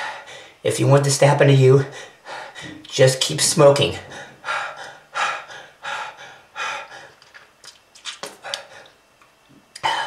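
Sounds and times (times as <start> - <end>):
person gasping breaths: 1.9 - 2.9, 4.0 - 7.3, 8.3 - 9.0, 9.8 - 10.0.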